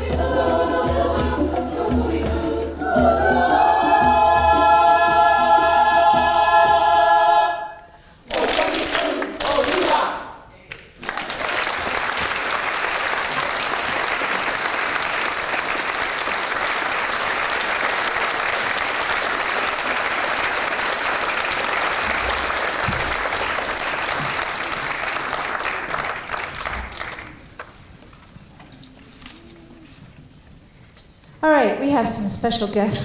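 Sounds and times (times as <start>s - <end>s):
audience applauding: 8.3s - 10.1s, 10.8s - 27.8s.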